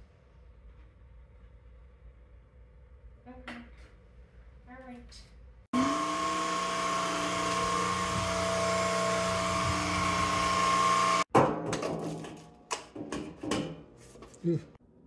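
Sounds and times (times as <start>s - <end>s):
vacuum cleaner motor whining: 5.8s - 11.3s.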